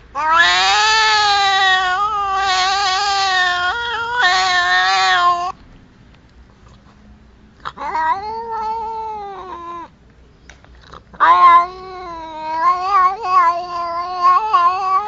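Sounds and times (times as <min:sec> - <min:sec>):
cat yowling: 0:00.1 - 0:05.6, 0:07.6 - 0:09.9, 0:10.9 - 0:15.0.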